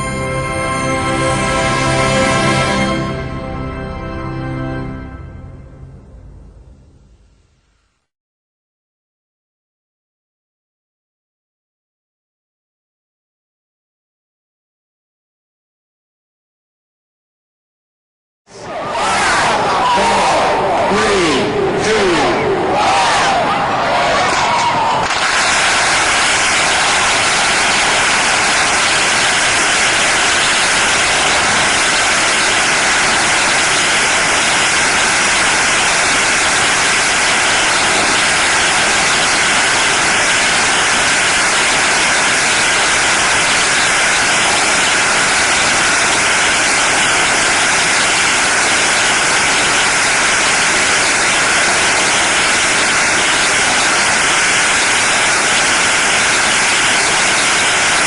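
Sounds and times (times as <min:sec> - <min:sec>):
firecrackers crackling: 0:25.0 - 0:58.0.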